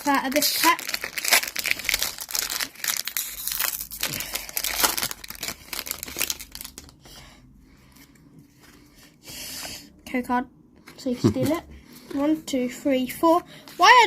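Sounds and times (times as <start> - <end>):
foil wrapper crinkling: 0.0 - 7.0.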